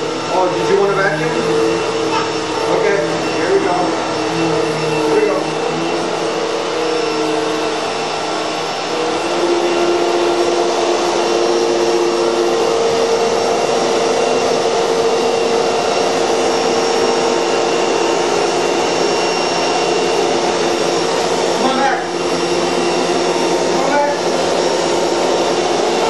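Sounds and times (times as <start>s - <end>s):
vacuum cleaner running: 0.0s - 26.0s.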